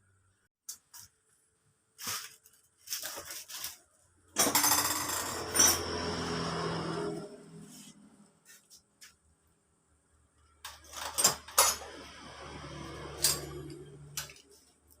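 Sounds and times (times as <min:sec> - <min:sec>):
metal tools clinking and scraping: 0:04.4 - 0:06.1, 0:10.6 - 0:12.0, 0:13.0 - 0:14.6.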